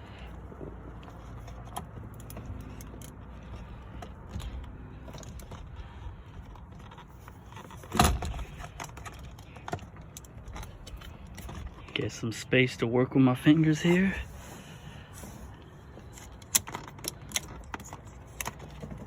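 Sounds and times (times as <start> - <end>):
small metallic clicks and scrapes: 0.9 - 12.0, 15.5 - 19.0.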